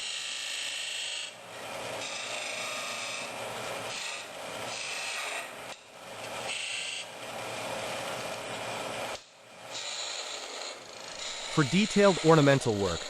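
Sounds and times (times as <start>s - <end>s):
lathe tool rasping on wood: 9.8s - 13.0s.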